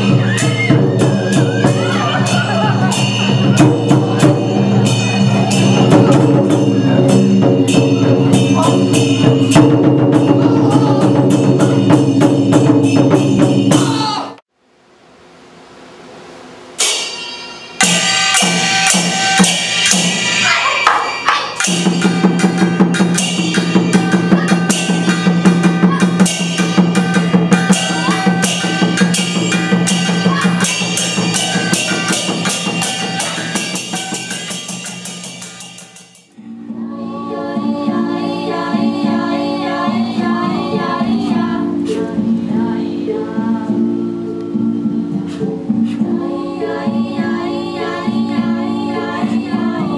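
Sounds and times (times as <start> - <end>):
fast dense drumming: 0.0 - 14.2, 21.6 - 36.3
low held tone: 21.7 - 39.8.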